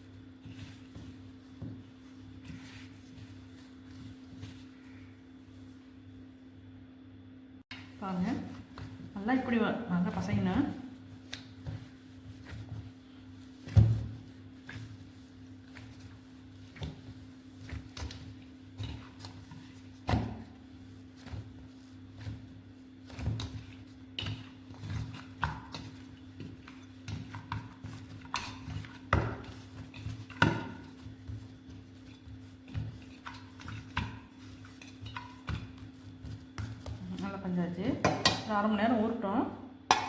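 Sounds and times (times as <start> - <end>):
dough thumping against bowl: 7.7 - 38.6.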